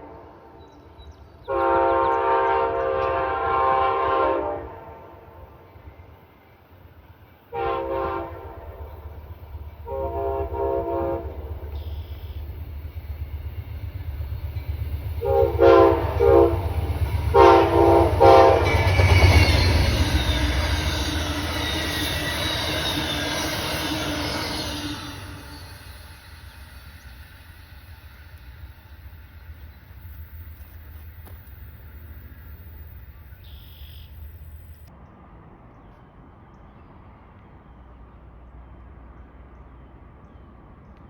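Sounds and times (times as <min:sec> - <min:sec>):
train rumble passing: 0:00.0 - 0:41.0
locomotive horn blasts: 0:01.5 - 0:05.4, 0:07.5 - 0:08.9, 0:09.8 - 0:12.4, 0:15.2 - 0:23.4
wheels hissing and squealing on rails: 0:03.8 - 0:34.9.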